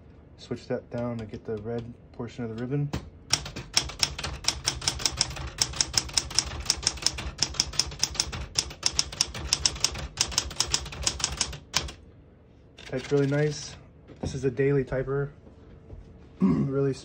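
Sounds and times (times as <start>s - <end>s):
manual typewriter typing: 1.0s - 12.0s, 12.8s - 13.8s.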